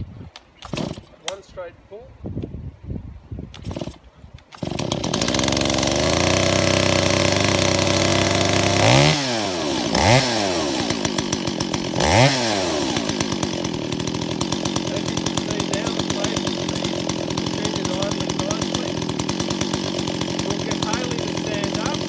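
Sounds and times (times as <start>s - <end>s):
chainsaw idling and revving: 0.6s - 1.4s, 3.6s - 22.0s
chainsaw pull-start: 0.6s - 1.5s, 3.5s - 22.0s.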